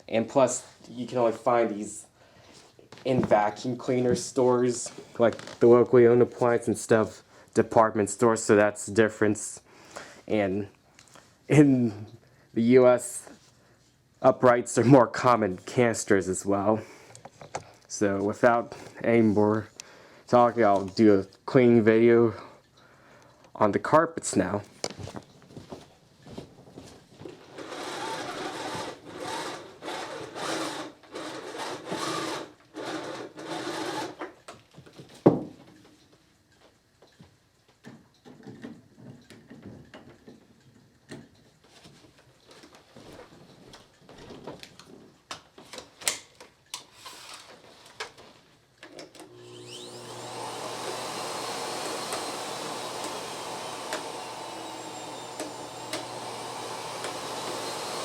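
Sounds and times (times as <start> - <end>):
vacuum cleaner motor running: 27.6 - 30.8, 49.2 - 58.0.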